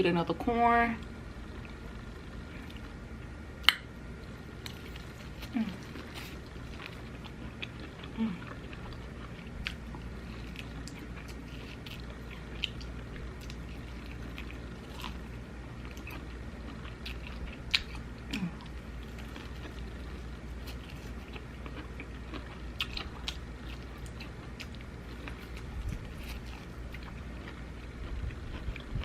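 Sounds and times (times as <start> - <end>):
steady low hum: 0.0 - 29.0
person chewing crunchy food: 1.4 - 29.0.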